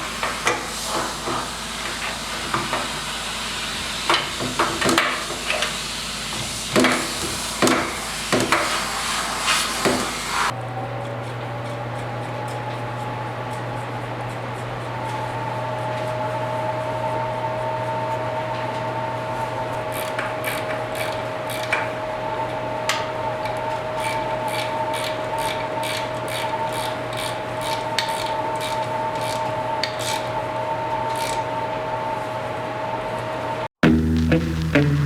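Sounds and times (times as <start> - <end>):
electrical hum: 33.8 - 35.0.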